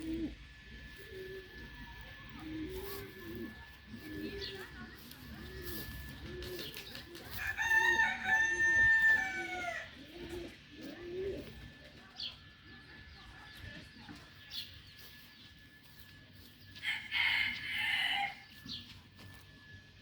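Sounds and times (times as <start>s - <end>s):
low cooing: 0.0s - 7.4s, 8.4s - 11.8s
rooster crowing: 7.3s - 10.0s, 16.8s - 18.6s.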